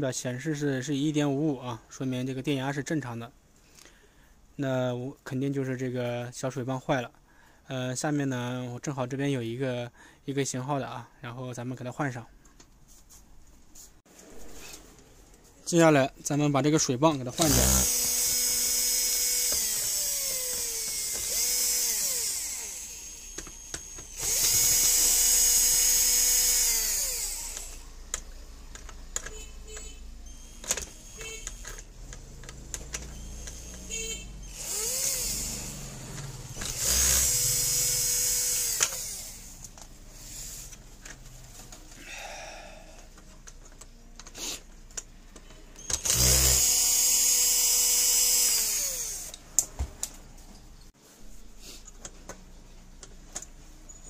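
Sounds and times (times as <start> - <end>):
electric screwdriver motor whine: 17.4 - 27.8, 30.3 - 39.6, 45.8 - 49.4.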